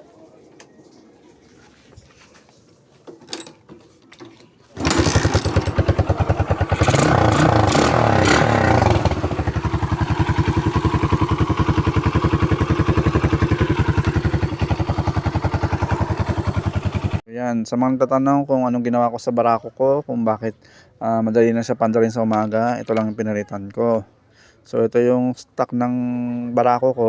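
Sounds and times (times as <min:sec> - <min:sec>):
motorcycle engine starting and idling: 0:03.0 - 0:17.2.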